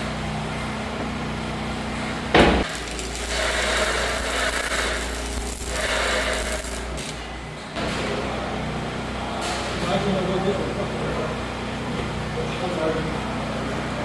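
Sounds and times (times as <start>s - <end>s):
hissing and crackling: 2.6s - 7.2s.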